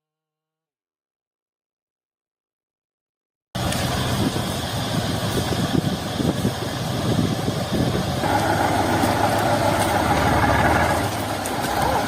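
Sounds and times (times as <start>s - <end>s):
engine running with knocking: 3.6s - 12.0s
loud rushing noise: 3.6s - 12.0s.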